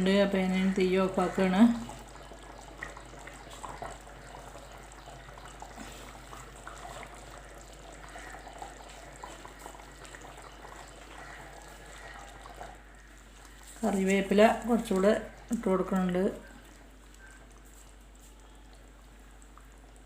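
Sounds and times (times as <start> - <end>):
curry bubbling in a pot: 0.0 - 20.0.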